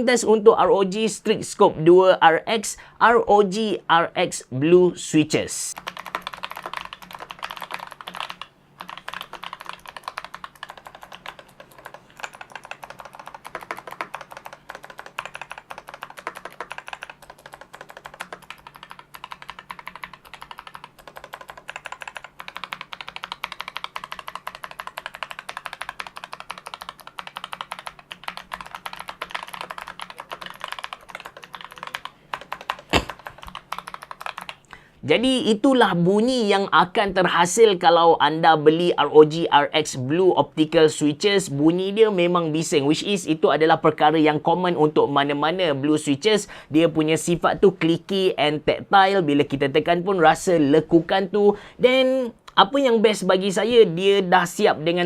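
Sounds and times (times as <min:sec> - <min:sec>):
fast clicky keyboard typing: 0:05.7 - 0:34.7.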